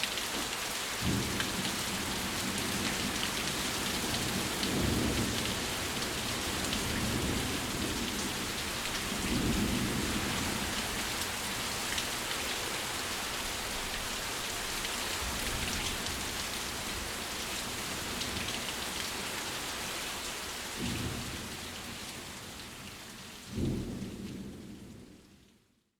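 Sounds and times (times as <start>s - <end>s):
rain hiss: 0.0s - 25.6s
thunder rumbles: 1.0s - 11.2s.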